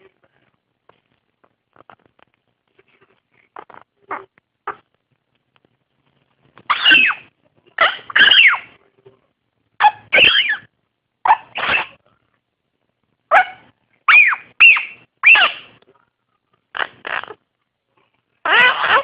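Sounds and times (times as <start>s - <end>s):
parrot squawking: 6.7s - 8.8s, 9.8s - 10.7s, 11.3s - 12.0s, 13.3s - 15.8s, 16.7s - 17.4s, 18.4s - 19.0s.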